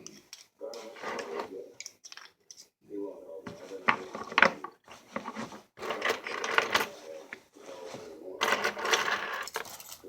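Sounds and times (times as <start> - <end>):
rustling scrape: 0.8 - 1.5, 3.6 - 8.6.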